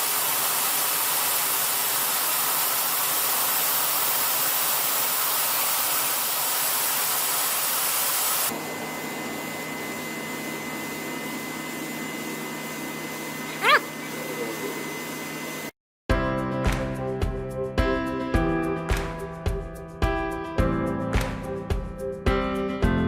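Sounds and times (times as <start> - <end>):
spray gun loud hiss: 0.0 - 8.6
machine noise with high whine: 0.0 - 15.7.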